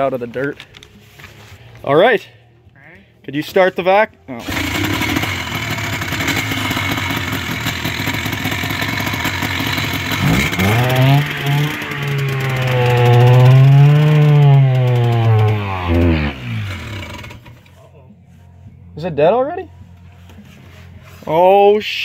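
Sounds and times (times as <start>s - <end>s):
two-stroke engine running rough: 4.4s - 17.7s.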